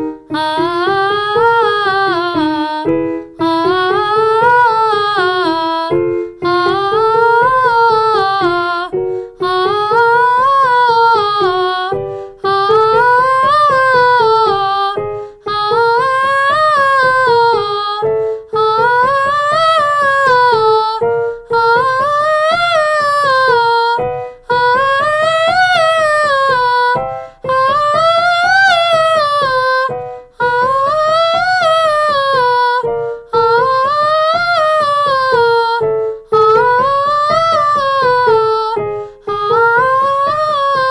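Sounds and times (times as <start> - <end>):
woman singing vocal scales: 0.0 - 40.9
singer breathing: 3.0 - 3.4, 6.0 - 6.4, 9.1 - 9.4, 12.0 - 12.4, 15.1 - 15.4, 18.1 - 18.5, 21.1 - 21.5, 24.1 - 24.4, 27.0 - 27.4, 30.0 - 30.4, 33.0 - 33.3, 35.9 - 36.3, 38.9 - 39.3.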